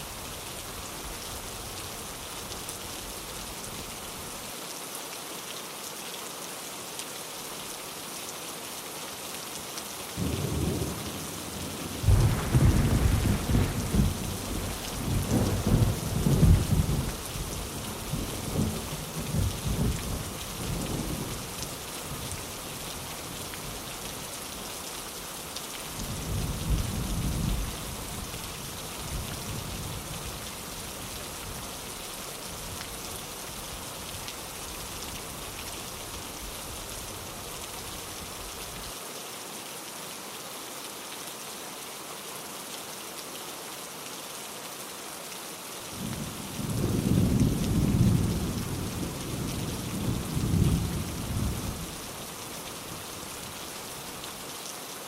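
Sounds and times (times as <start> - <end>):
heavy rain: 0.0 - 55.0
rolling thunder: 11.8 - 17.2.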